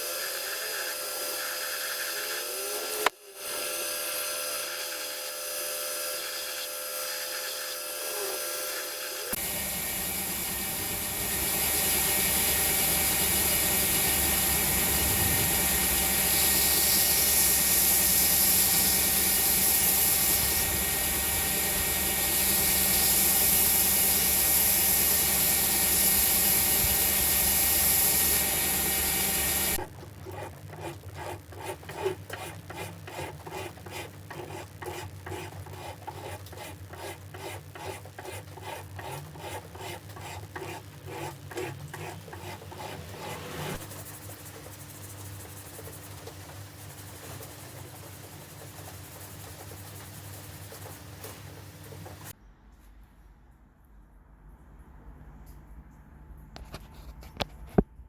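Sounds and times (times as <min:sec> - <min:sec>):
grinder running with high hiss: 0:00.0 - 0:29.9.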